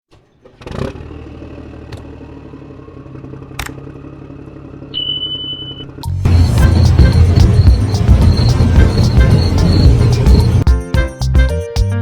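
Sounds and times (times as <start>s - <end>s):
high steady tone: 5.0s - 10.7s
low motor hum: 6.0s - 10.6s.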